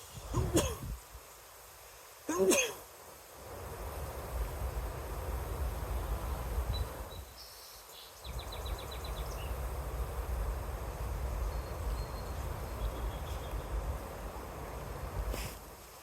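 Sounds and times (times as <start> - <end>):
wind rumble on microphone: 0.0 - 1.0, 3.5 - 7.4, 8.2 - 15.7
small bird chirping: 6.7 - 9.6, 11.4 - 13.8.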